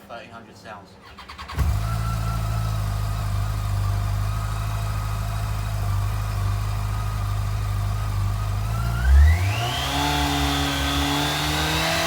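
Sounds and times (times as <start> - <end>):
motorcycle engine idling: 1.8 - 8.7.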